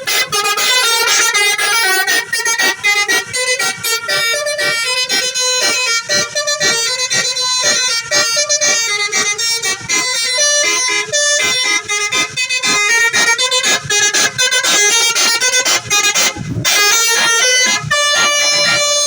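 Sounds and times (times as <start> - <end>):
musical bus horn playing tune: 0.0 - 19.0.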